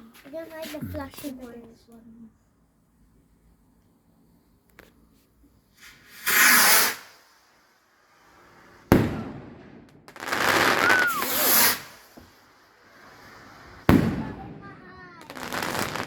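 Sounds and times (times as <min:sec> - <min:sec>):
firework hissing rush: 0:05.7 - 0:09.5, 0:10.1 - 0:16.0
firework bang: 0:08.8 - 0:12.4, 0:13.7 - 0:16.0.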